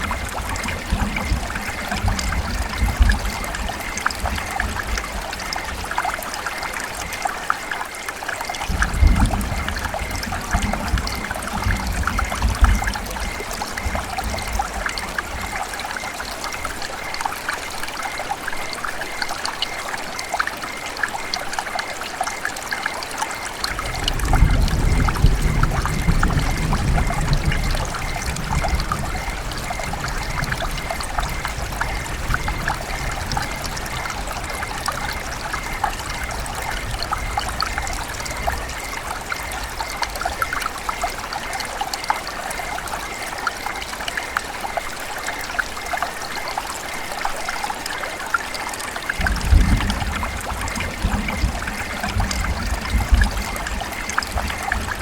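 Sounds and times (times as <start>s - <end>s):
river water babbling: 0.0s - 55.0s.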